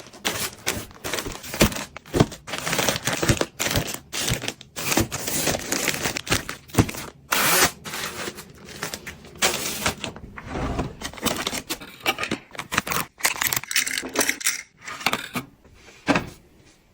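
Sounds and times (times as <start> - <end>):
household items rustling and scraping: 0.0 - 16.9.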